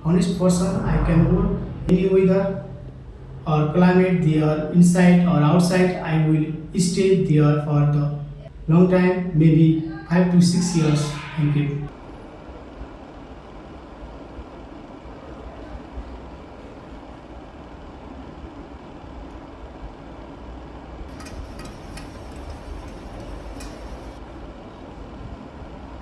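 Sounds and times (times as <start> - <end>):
low background rumble: 0.0 - 10.0, 21.1 - 24.2
light clicks and rattles: 21.1 - 24.2.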